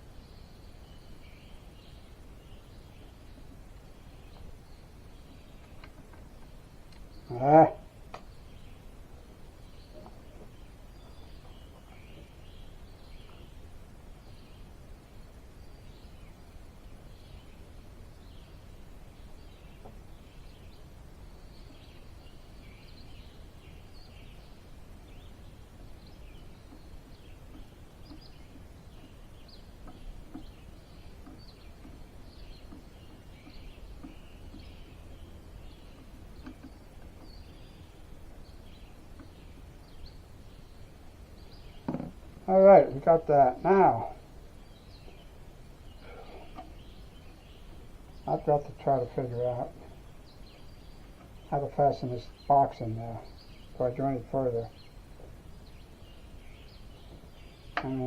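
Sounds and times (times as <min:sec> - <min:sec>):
small birds chirping: 0:00.0 - 0:58.0
faint knocks: 0:41.8 - 0:42.2.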